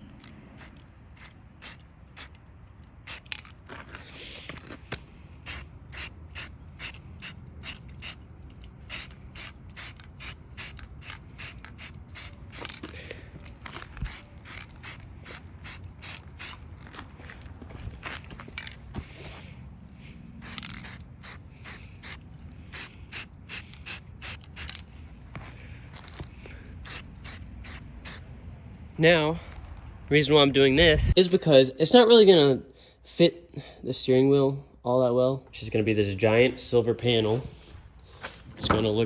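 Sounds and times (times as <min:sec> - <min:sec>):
spray can ball rattling: 0:00.5 - 0:03.8, 0:05.4 - 0:13.0, 0:13.7 - 0:16.7, 0:20.4 - 0:25.0, 0:26.0 - 0:28.3.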